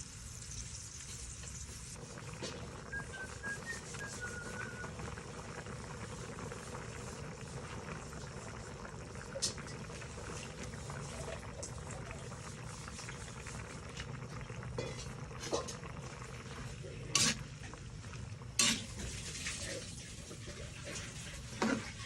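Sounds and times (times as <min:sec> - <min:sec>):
stew bubbling in a pot: 0:00.0 - 0:22.0
utensil clinking against pot: 0:17.1 - 0:17.7.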